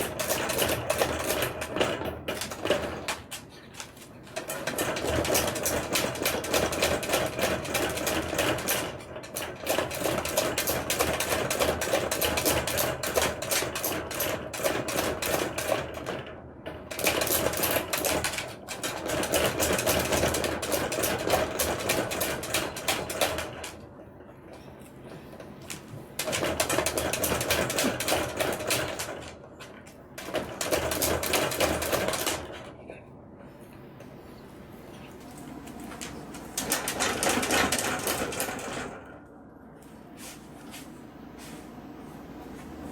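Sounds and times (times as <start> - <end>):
wire dog cage rattling: 26.2 - 29.4, 36.0 - 39.1.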